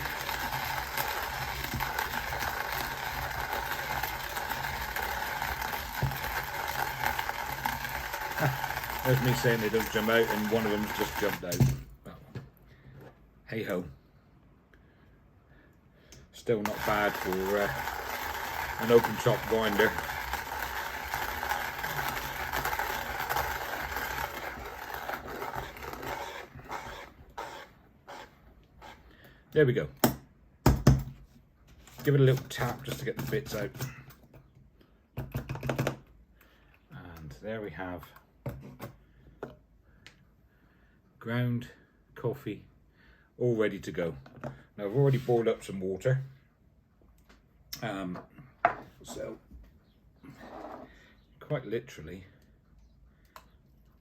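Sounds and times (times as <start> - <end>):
hand grinder grinding coffee beans: 0.0 - 11.8, 16.4 - 29.0.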